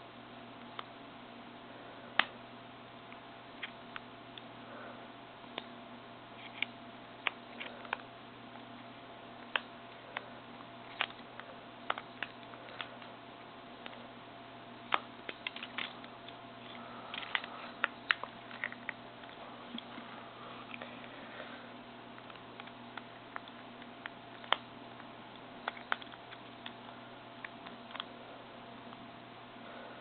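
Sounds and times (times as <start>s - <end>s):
faint steady hum: 0.0s - 30.0s.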